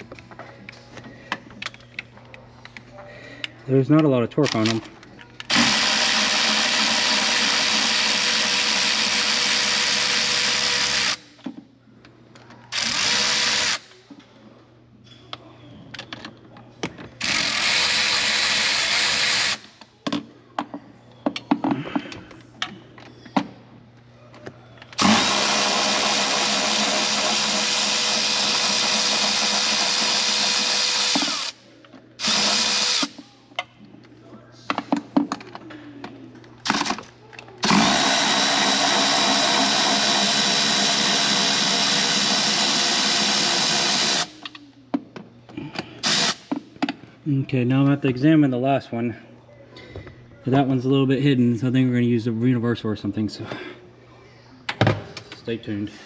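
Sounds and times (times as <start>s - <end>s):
cordless power driver spinning: 25.0s - 31.6s, 37.6s - 44.4s, 46.0s - 46.4s.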